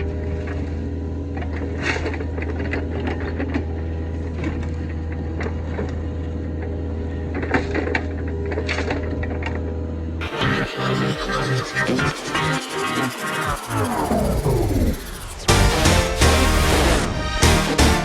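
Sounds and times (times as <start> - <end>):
excavator diesel engine running: 10.2 - 18.0.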